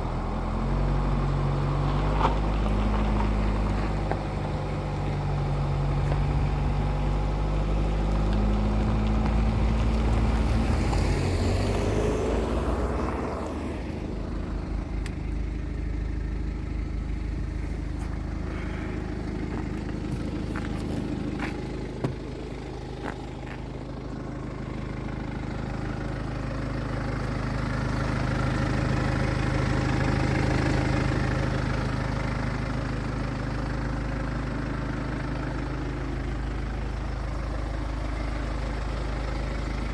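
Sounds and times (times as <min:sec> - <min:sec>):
diesel engine idling: 0:00.0 - 0:39.9.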